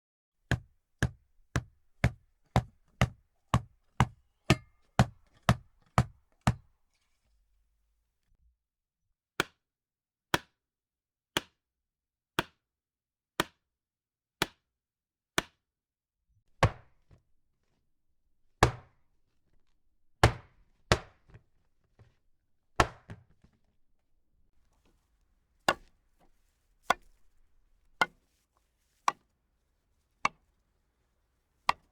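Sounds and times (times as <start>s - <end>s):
axe chopping wood: 0.5s - 6.6s, 18.6s - 19.0s, 20.2s - 21.4s, 22.8s - 23.2s, 25.7s - 26.0s, 26.9s - 27.4s, 28.0s - 28.2s, 29.1s - 29.3s, 31.7s - 31.9s.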